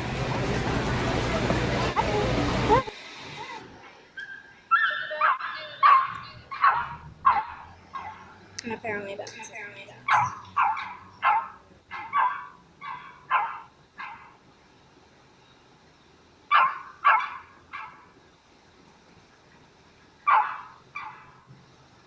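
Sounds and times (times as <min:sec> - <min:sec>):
small dog barking: 0:04.2 - 0:08.4, 0:10.0 - 0:14.4, 0:16.5 - 0:18.0, 0:20.2 - 0:21.4.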